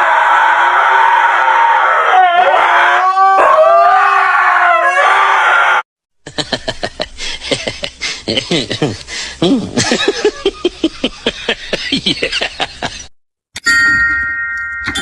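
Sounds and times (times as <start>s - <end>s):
dog howling: 0.0s - 5.8s.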